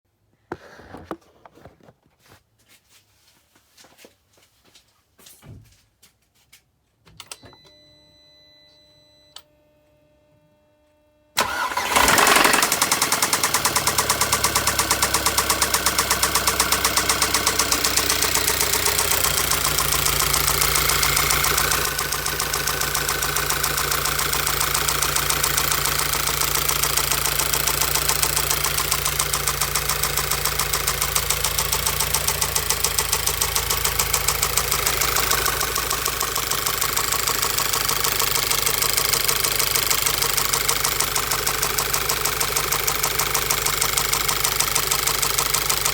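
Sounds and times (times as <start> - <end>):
car engine starting and idling: 11.4 - 45.9
fast even engine knock: 11.5 - 45.9.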